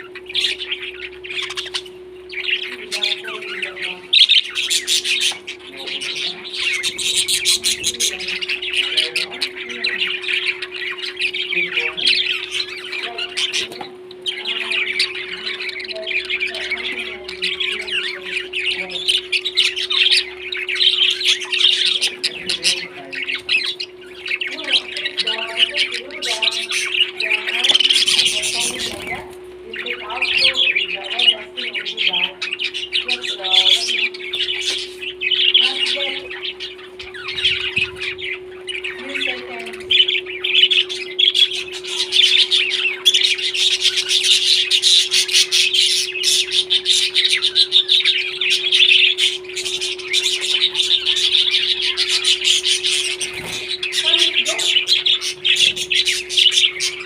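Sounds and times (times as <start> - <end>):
parrots chattering and squawking: 0.0 - 57.0
steady low hum: 0.0 - 57.0.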